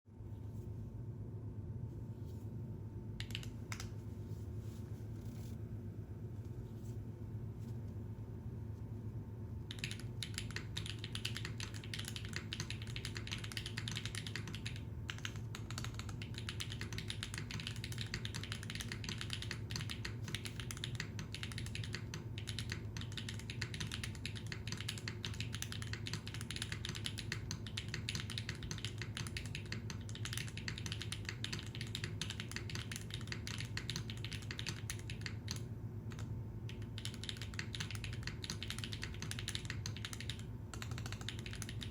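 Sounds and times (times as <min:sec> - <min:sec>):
mechanical keyboard typing clacks: 0:03.2 - 0:03.9, 0:09.7 - 0:41.9.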